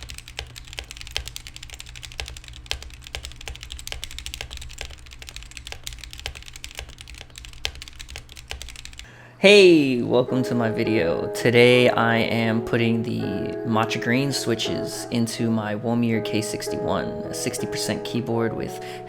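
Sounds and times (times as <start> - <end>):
mechanical keyboard typing: 0.0 - 9.1.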